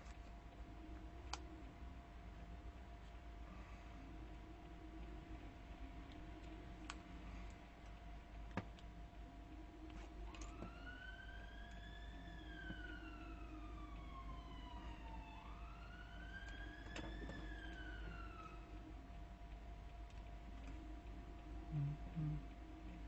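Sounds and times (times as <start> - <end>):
faint steady hum: 0.0 - 23.0
emergency vehicle siren wailing: 10.2 - 19.0.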